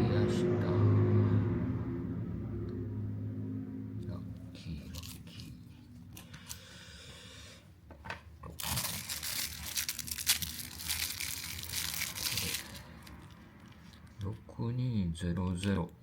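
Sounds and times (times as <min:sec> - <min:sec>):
packaging crinkling and rustling: 0:04.9 - 0:05.6, 0:08.5 - 0:14.0.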